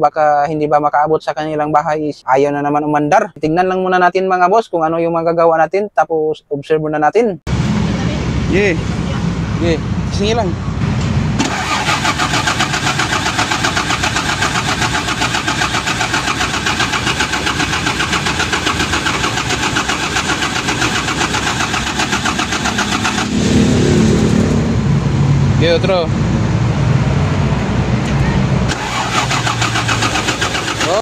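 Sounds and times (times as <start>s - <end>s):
diesel engine cranking: 9.6s - 25.0s, 28.0s - 31.0s.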